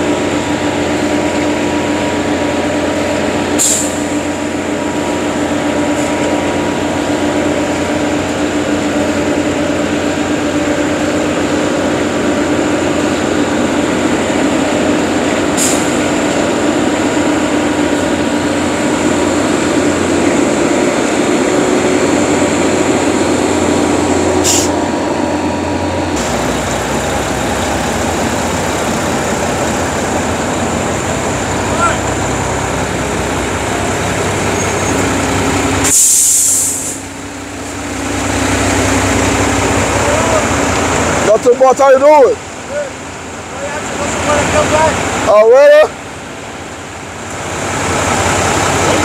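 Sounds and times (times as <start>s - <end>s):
diesel engine rumble: 0.0s - 49.0s
short high hiss: 3.6s - 4.1s, 35.8s - 37.1s.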